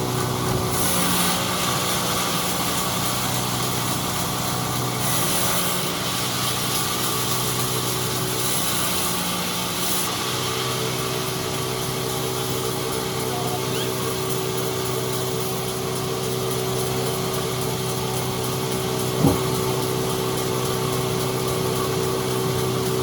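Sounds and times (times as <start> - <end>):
sawmill motor hum: 10.5 - 20.6.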